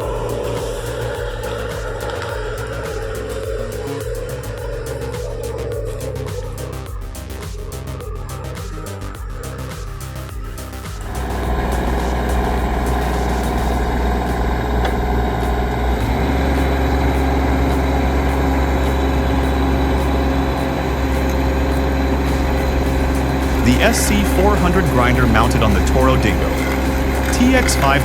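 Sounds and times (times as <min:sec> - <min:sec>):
loader engine running under load: 0:11.0 - 0:28.0.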